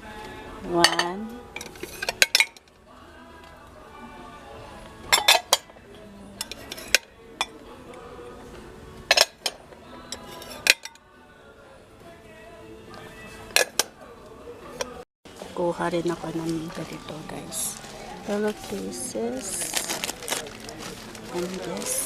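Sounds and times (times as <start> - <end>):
background music: 0.0 - 22.0
bowls clinking: 0.8 - 2.7, 5.1 - 5.8, 6.4 - 7.6.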